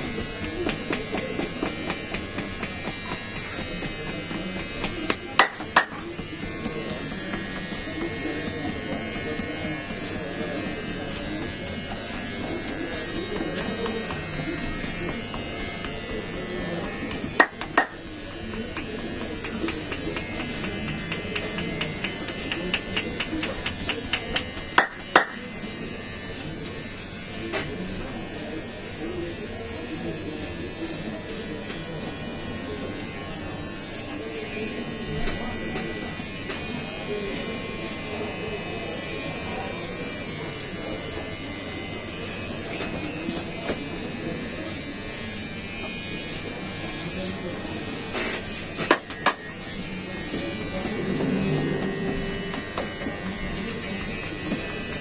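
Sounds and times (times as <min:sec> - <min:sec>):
small electric motor buzzing: 0:00.0 - 0:55.0
hands slapping in massage: 0:04.8 - 0:06.1, 0:18.7 - 0:25.4.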